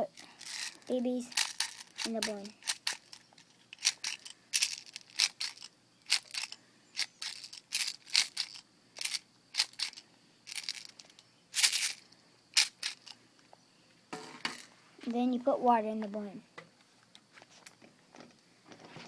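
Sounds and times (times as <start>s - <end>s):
speed loader clicking rattles: 0.2s - 3.2s.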